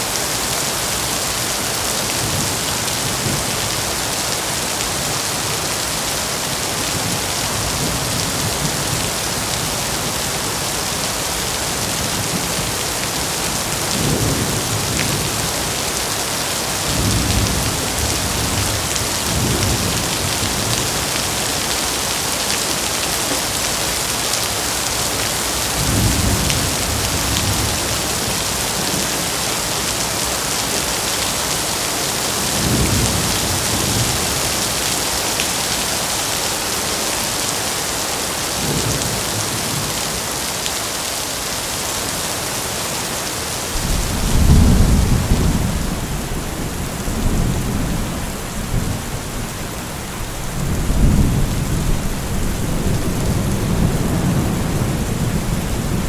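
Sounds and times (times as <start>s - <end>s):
heavy rain pouring: 0.0s - 56.0s
thunder rumbling: 43.7s - 56.0s.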